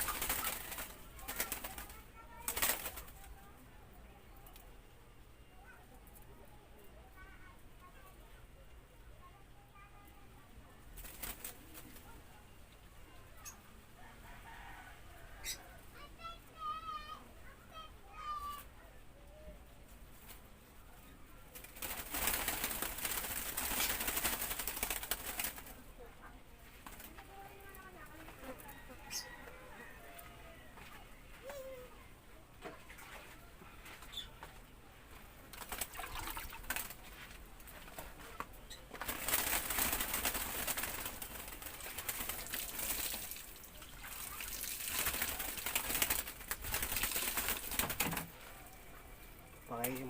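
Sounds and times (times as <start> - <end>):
dove wings flapping: 0.0 - 3.4, 10.9 - 12.2, 21.5 - 26.0, 26.8 - 28.6, 35.5 - 48.7.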